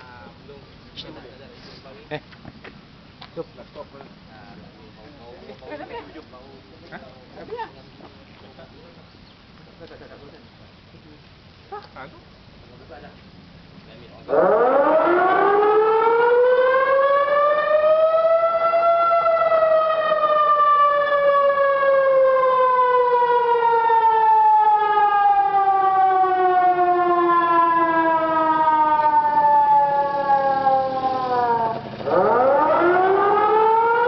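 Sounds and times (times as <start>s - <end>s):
warning siren wailing: 14.2s - 34.0s.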